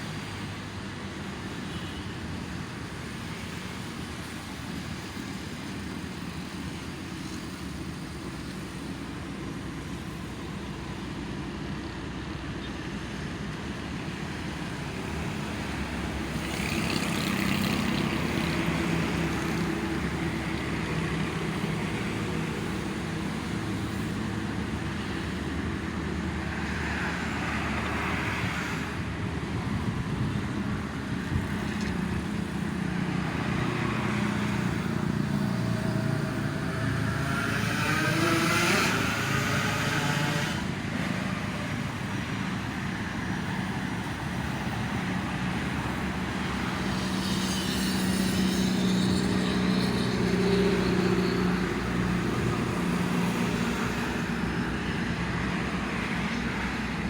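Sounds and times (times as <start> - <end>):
vehicles passing: 0.0 - 57.0
engine speeding up: 33.0 - 42.7.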